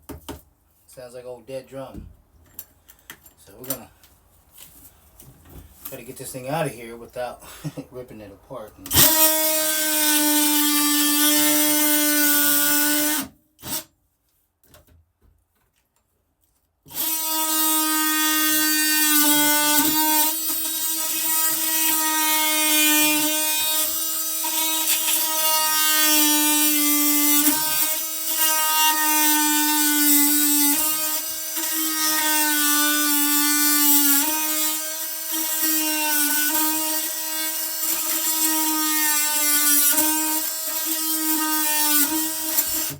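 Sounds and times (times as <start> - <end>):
power tool cutting wood: 8.9 - 13.9, 16.9 - 42.9.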